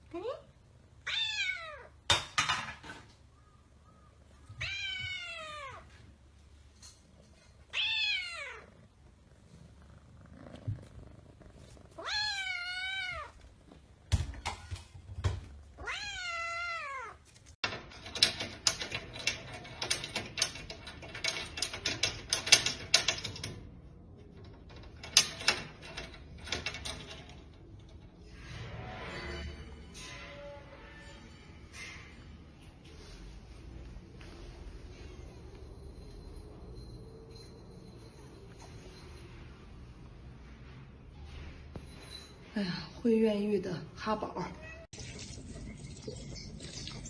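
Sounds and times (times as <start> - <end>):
cat meowing: 1.0 - 2.0, 4.5 - 5.9, 7.7 - 8.8, 12.0 - 13.4, 15.8 - 17.2, 44.6 - 44.9.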